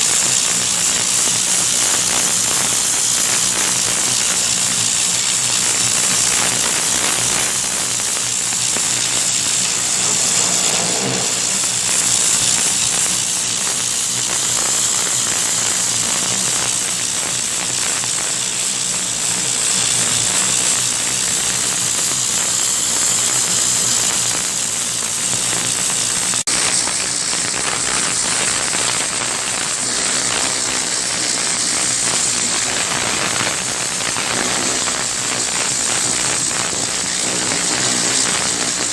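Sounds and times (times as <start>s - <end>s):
water jet spraying roofing: 28.0s - 38.9s.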